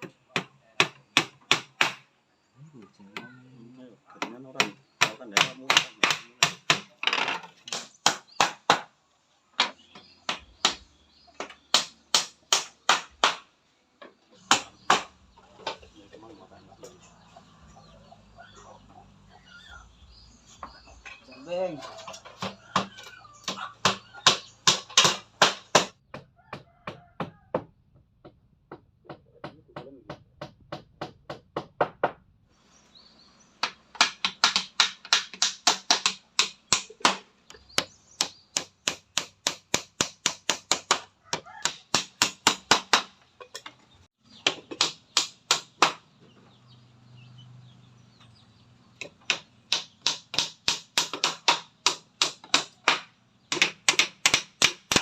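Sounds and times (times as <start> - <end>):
hammer striking nails into wood: 0.0 - 2.1, 4.2 - 8.9, 9.6 - 10.8, 11.4 - 13.5, 14.5 - 15.1, 22.4 - 27.7, 33.6 - 43.2, 44.4 - 46.0, 49.0 - 55.0.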